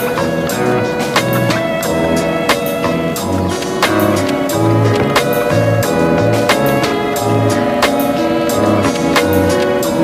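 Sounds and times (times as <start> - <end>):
music with steady drum beat: 0.0 - 10.0
held tones and bass notes: 3.0 - 9.1.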